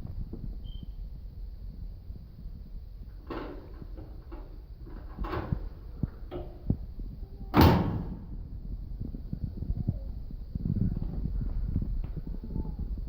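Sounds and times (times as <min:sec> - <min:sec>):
loud metal bang: 0:07.6 - 0:08.3.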